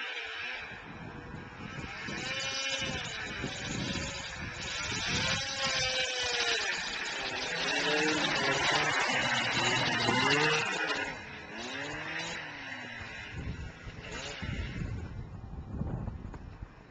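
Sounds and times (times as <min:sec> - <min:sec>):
snowmobile engine revving: 0:00.0 - 0:15.5.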